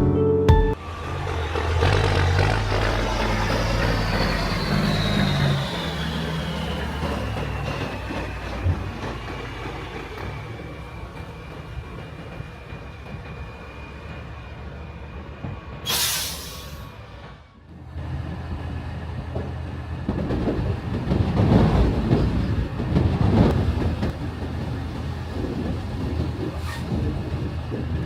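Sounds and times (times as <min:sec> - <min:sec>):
harvester engine drone: 0:00.0 - 0:15.8
short hiss: 0:15.9 - 0:16.9.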